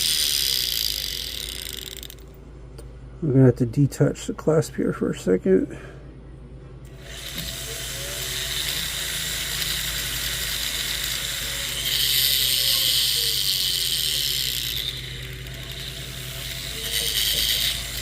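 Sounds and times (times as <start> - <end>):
rotary tool whirring: 0.0 - 2.4, 6.9 - 18.0.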